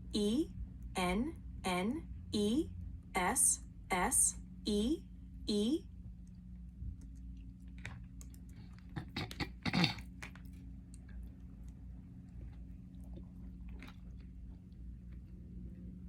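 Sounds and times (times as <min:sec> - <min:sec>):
steady low hum: 0:00.0 - 0:16.0
person chewing crunchy food: 0:07.0 - 0:15.4.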